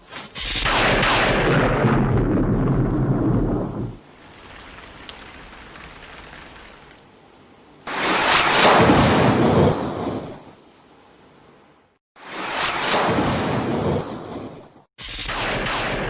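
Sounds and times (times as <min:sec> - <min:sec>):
thunderclap: 0:00.4 - 0:07.0, 0:07.9 - 0:10.4, 0:12.3 - 0:16.0
steady rain: 0:02.5 - 0:10.4.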